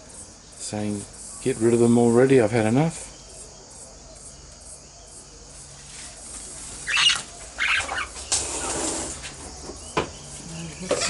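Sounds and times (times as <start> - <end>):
faint insect chirring: 0.0 - 11.0
parrot scratchy calls: 5.8 - 9.4.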